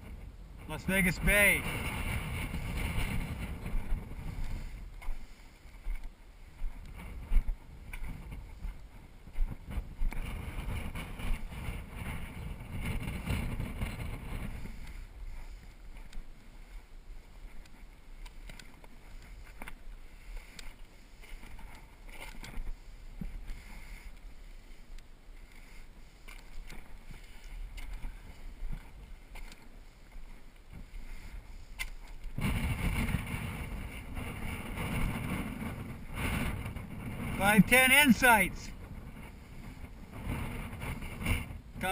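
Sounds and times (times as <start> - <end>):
wind buffeting microphone: 0.0 - 41.9
faint clicks: 15.9 - 16.3, 17.5 - 19.8, 20.5 - 24.3, 24.9 - 31.0.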